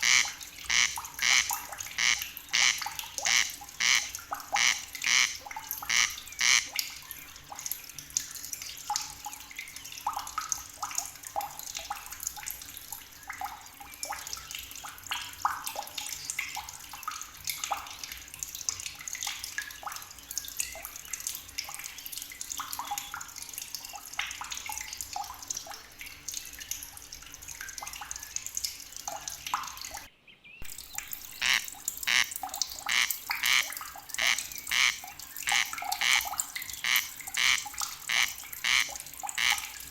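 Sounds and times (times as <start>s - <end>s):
frogs croaking: 0.0s - 6.8s, 30.7s - 39.7s.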